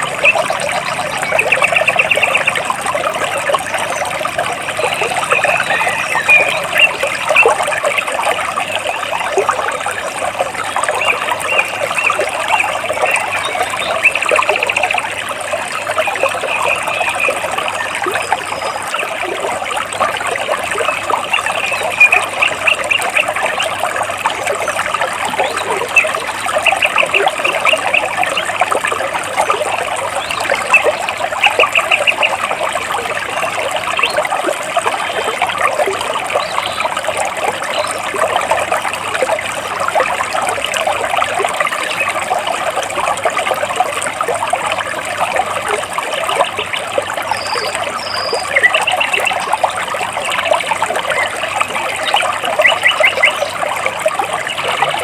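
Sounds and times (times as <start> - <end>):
stream burbling over rocks: 0.0 - 55.0
bird chirping: 0.2 - 2.6, 4.8 - 7.5.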